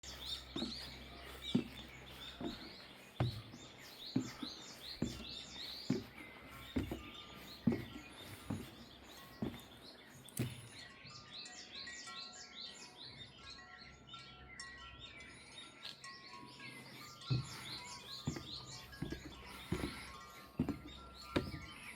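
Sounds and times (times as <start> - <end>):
footsteps on stairs: 0.0 - 10.7, 17.3 - 21.9
small birds chirping: 0.0 - 21.9.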